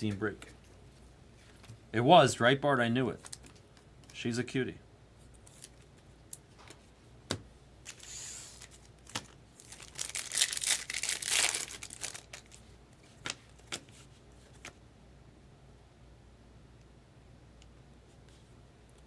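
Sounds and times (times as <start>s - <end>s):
wrapper tearing and crinkling: 7.9s - 12.6s.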